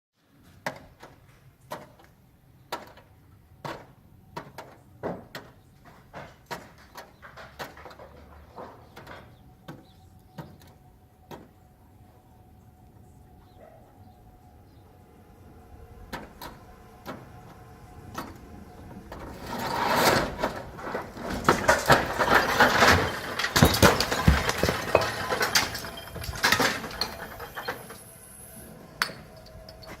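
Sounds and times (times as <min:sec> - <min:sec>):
crash of falling brick rubble: 0:19.2 - 0:28.0
masonry knocks: 0:21.2 - 0:27.2.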